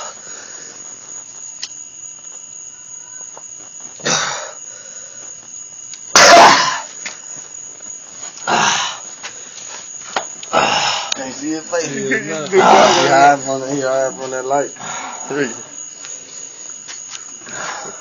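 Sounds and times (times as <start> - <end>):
man coughing hard: 4.0 - 4.5, 6.1 - 6.9.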